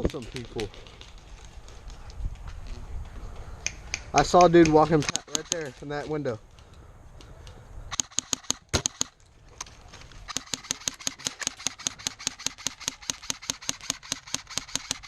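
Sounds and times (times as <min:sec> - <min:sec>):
airsoft gun firing: 0:07.9 - 0:09.1, 0:10.3 - 0:15.0.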